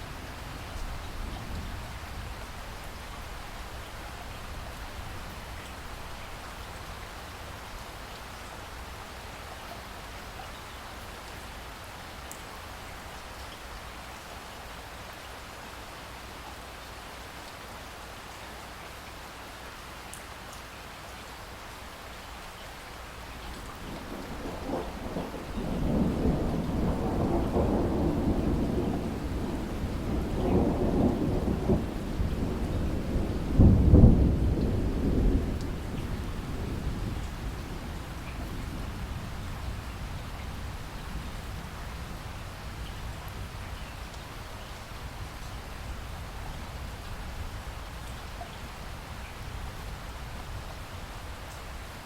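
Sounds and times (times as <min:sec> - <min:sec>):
steady rain falling: 0:00.0 - 0:52.0
rolling thunder rumble: 0:23.6 - 0:43.9.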